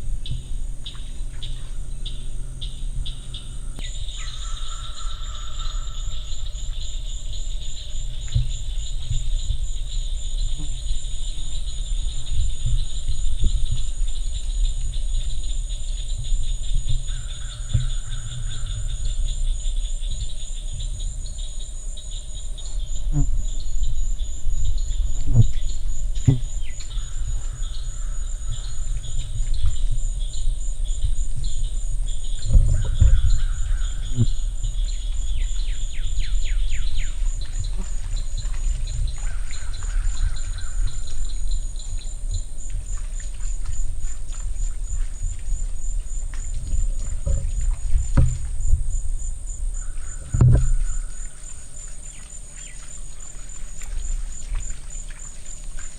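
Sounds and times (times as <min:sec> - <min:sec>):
insect chirps: 0:00.0 - 0:55.9
insects trilling: 0:00.0 - 0:55.9
dull knocks: 0:47.0 - 0:48.9, 0:50.2 - 0:50.8.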